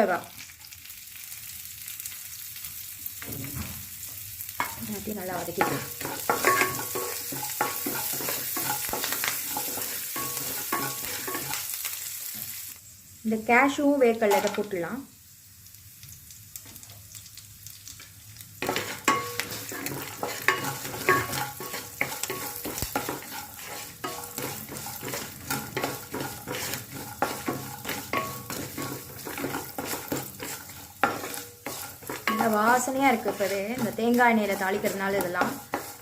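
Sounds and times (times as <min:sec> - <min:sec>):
nuts sizzling in oil: 0:00.0 - 0:36.0
spoon scraping a pan: 0:04.6 - 0:11.8, 0:18.6 - 0:36.0.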